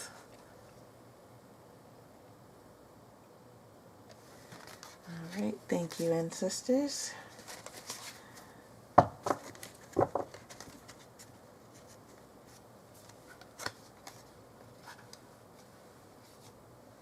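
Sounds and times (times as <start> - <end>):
cards tapping on table: 9.0 - 10.4.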